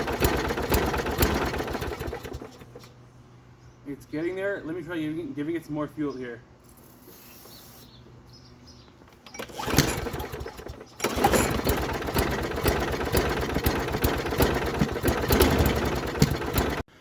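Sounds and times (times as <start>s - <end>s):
lawn mower engine: 0.0s - 3.1s, 9.1s - 17.0s.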